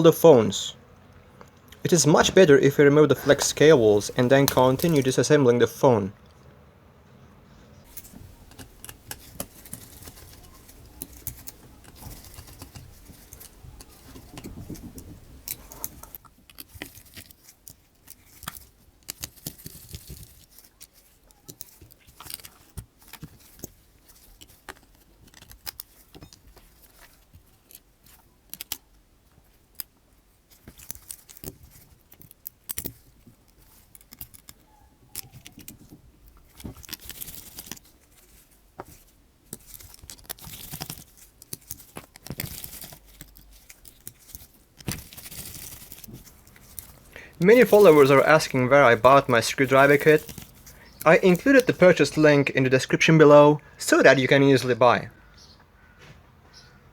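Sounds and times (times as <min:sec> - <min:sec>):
hand tools clicking on phone: 0:07.8 - 0:30.0, 0:30.6 - 0:38.2.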